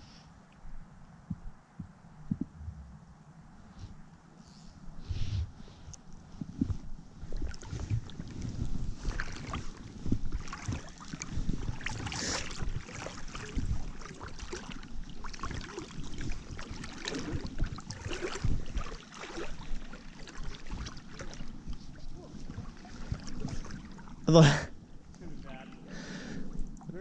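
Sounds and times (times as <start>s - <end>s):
wind buffeting microphone: 4.9s - 25.4s
water sloshing and splashing: 6.3s - 27.0s.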